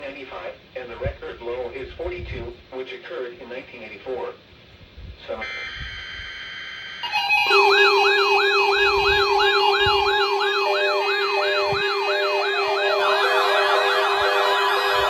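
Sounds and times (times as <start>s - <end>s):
weather alert radio alarms: 6.9s - 15.0s.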